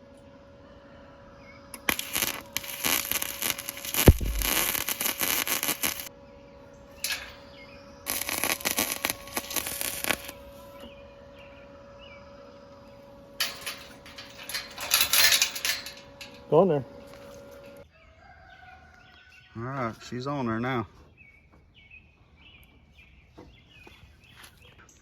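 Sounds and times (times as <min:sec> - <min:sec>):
metal gate scraping and rattling: 0:06.9 - 0:10.8, 0:13.3 - 0:17.8.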